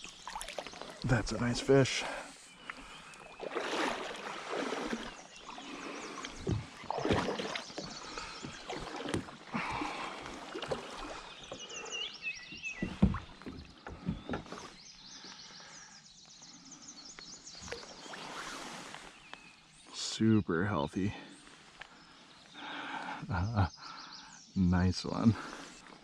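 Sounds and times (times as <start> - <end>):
water splashing: 0.0 - 12.0.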